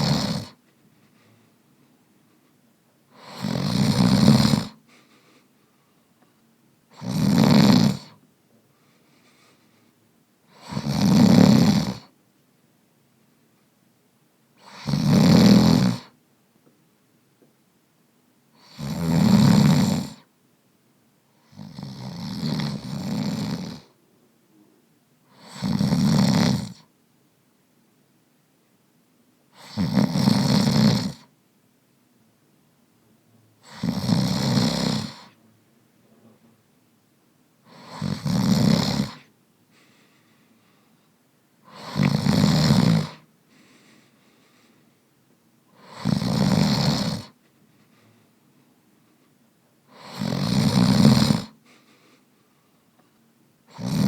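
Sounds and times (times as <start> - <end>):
man snoring: 0.0 - 0.6, 3.1 - 4.8, 6.9 - 8.2, 10.5 - 12.1, 14.6 - 16.1, 18.6 - 20.3, 21.4 - 24.0, 25.3 - 26.8, 29.5 - 31.3, 33.6 - 35.4, 37.6 - 39.3, 41.6 - 43.3, 45.7 - 47.4, 49.9 - 51.6, 53.7 - 54.0.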